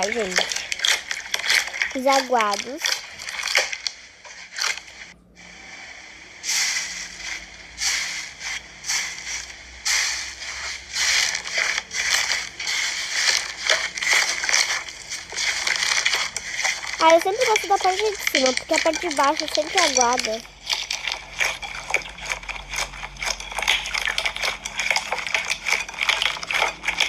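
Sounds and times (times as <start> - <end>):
wet slime crackling and popping: 0.0 - 5.2, 7.1 - 27.0.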